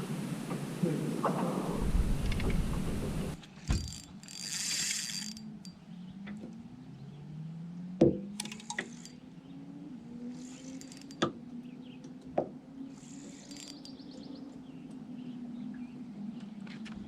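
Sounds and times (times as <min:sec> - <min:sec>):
fishing reel gears clicking: 0:03.6 - 0:05.8, 0:08.4 - 0:09.3, 0:10.3 - 0:11.3, 0:12.9 - 0:14.1.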